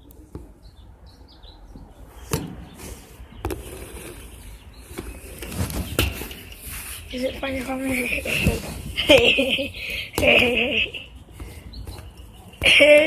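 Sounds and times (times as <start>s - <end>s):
pet bird chirping: 0.0s - 6.2s, 9.6s - 13.0s.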